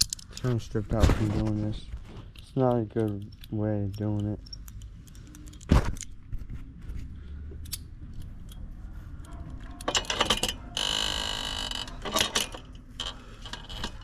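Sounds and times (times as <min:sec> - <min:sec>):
metal tools clinking: 0:02.3 - 0:05.7, 0:11.8 - 0:14.0.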